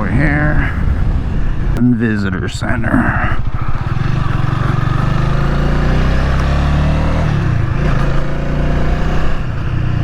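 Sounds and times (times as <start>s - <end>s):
motorcycle engine running: 3.3s - 10.0s.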